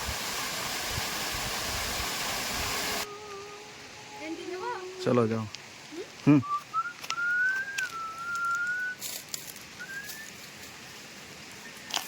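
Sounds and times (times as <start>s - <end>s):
person whistling: 6.3s - 9.0s, 9.8s - 10.4s.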